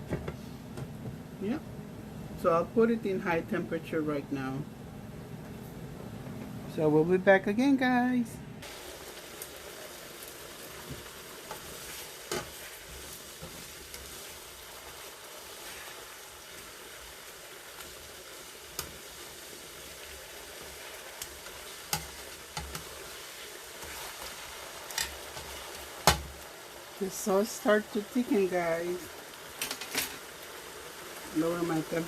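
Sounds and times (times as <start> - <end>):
sauce sizzling in a pot: 8.6 - 32.0.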